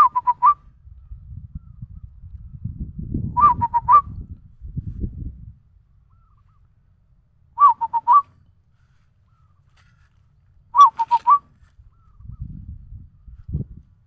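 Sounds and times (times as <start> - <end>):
person whistling dove call: 0.0 - 0.6, 3.4 - 4.2, 7.6 - 8.3, 10.8 - 11.5.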